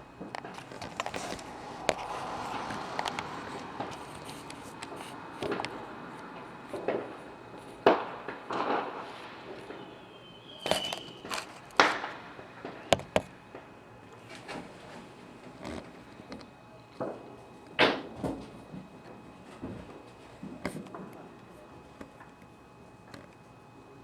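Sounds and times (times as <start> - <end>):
firework whistle: 0.0 - 13.1
fireworks bangs and pops: 0.0 - 13.7.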